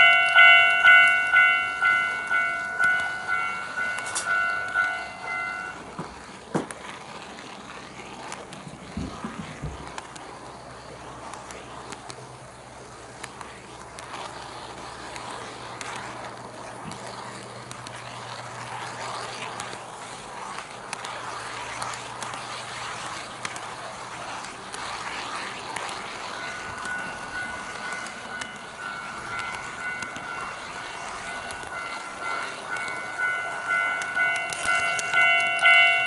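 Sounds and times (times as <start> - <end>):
level-crossing alarm tones: 0.0 - 6.2, 26.1 - 36.0
model train wheels clicking: 0.0 - 36.0.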